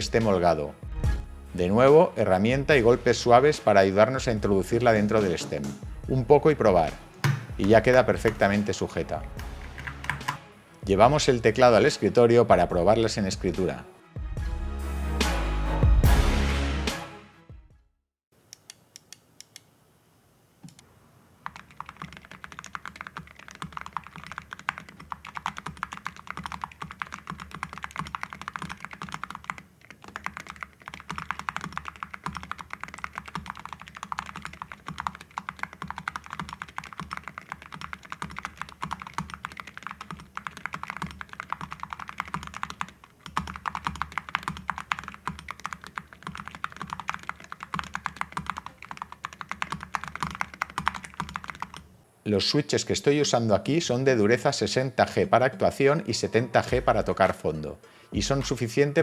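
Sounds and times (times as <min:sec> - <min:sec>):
mechanical keyboard typing: 0:06.8 - 0:08.8, 0:09.4 - 0:10.4, 0:21.4 - 0:51.9.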